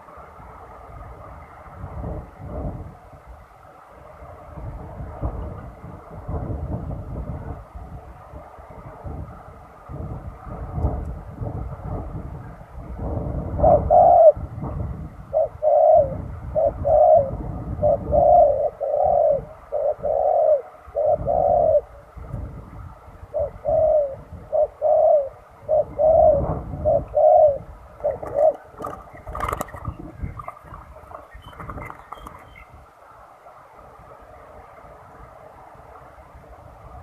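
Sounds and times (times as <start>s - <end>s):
dove cooing: 11.7s - 32.7s.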